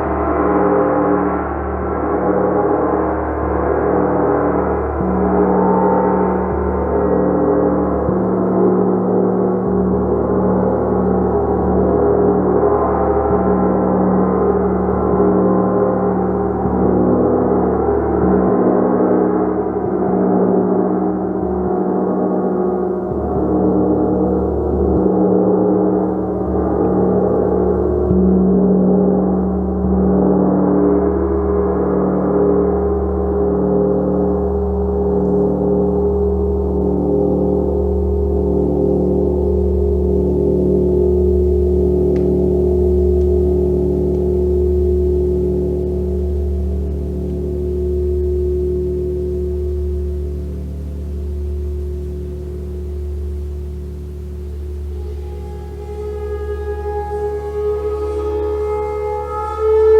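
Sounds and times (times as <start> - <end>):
large gong played continuously: 0.0 - 59.9.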